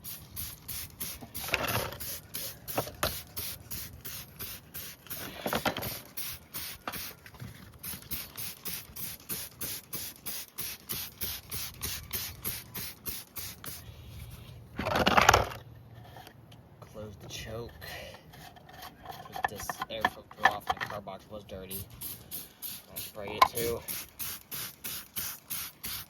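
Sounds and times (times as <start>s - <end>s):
spray bottle squirting: 0.0s - 13.8s, 21.6s - 26.0s.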